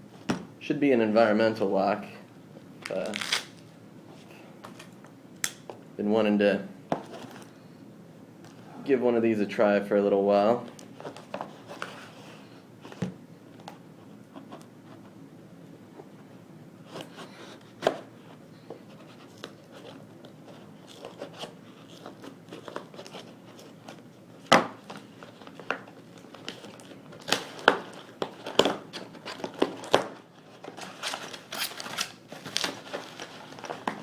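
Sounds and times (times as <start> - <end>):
packaging crinkling and tearing: 2.8 - 3.7, 24.7 - 34.0.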